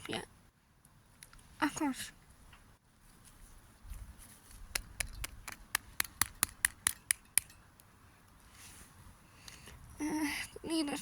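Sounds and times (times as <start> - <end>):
quick sharp taps: 4.7 - 7.5.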